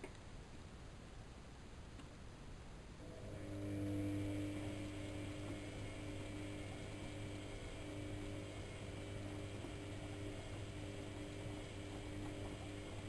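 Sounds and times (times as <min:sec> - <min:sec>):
washing machine humming: 0:03.0 - 0:13.0.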